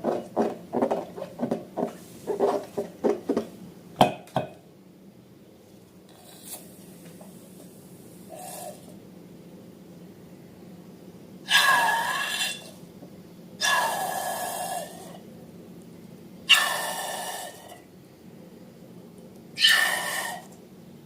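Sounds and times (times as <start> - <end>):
breathy hisses with faint whistle: 19.6 - 20.6.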